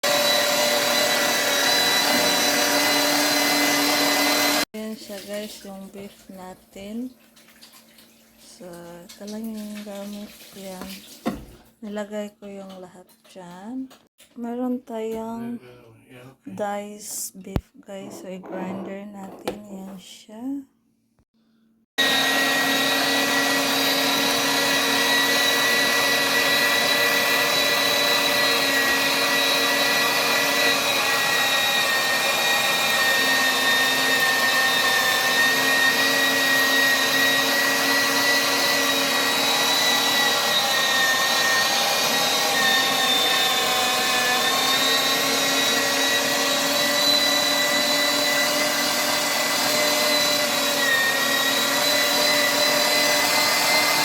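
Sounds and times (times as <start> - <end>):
meat grinder motor whine: 0.0 - 4.7, 22.0 - 54.0.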